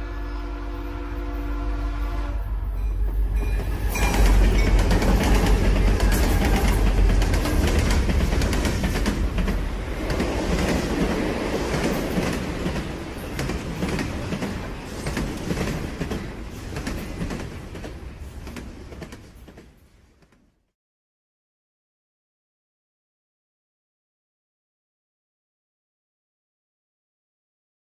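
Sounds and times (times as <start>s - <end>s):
train rumbling on rails: 0.0s - 20.6s.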